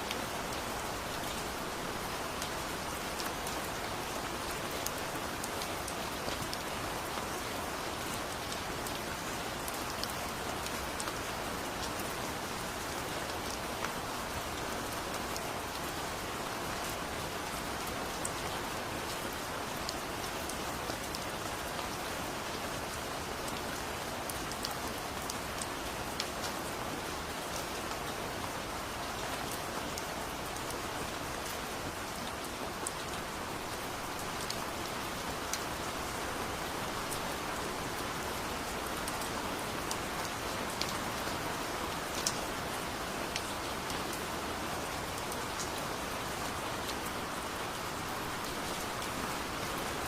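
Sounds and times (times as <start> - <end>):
heavy rain falling: 0.0 - 50.0.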